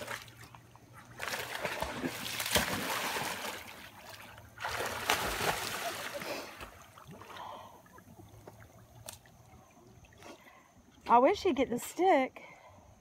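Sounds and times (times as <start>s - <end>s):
water splashing from swimming dog: 0.0s - 10.3s.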